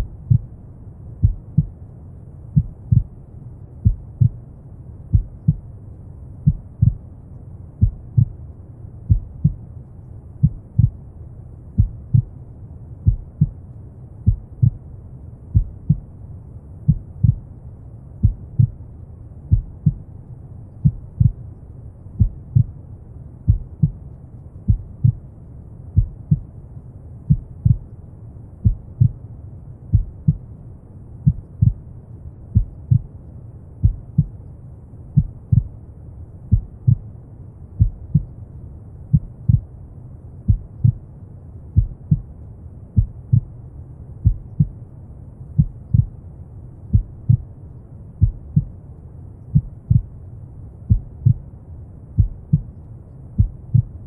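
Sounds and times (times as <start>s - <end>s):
heartbeat thumps: 0.0s - 0.5s, 1.2s - 1.8s, 2.6s - 3.1s, 3.8s - 4.4s, 5.1s - 5.6s, 6.4s - 7.1s, 7.8s - 8.4s, 9.1s - 9.6s, 10.4s - 11.0s, 11.8s - 12.4s, 13.0s - 13.6s, 14.2s - 14.8s, 15.5s - 16.1s, 16.9s - 17.4s, 18.2s - 18.8s, 19.5s - 20.0s, 20.8s - 21.4s, 22.2s - 22.8s, 23.5s - 24.0s, 24.7s - 25.2s, 26.0s - 26.5s, 27.3s - 27.8s, 28.6s - 29.2s, 29.9s - 30.4s, 31.2s - 31.8s, 32.5s - 33.1s, 33.8s - 34.4s, 35.2s - 35.8s, 36.5s - 37.1s, 37.8s - 38.3s, 39.1s - 39.7s, 40.5s - 41.0s, 41.8s - 42.3s, 43.0s - 43.5s, 44.2s - 44.8s, 45.6s - 46.2s, 46.9s - 47.5s, 48.2s - 48.8s, 49.5s - 50.1s, 50.9s - 51.4s, 52.2s - 52.7s, 53.4s - 54.0s.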